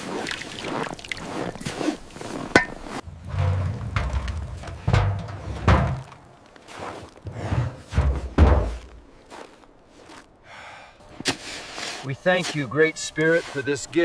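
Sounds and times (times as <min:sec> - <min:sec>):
heavy dull thuds: 0:02.6 - 0:06.4, 0:07.2 - 0:09.2.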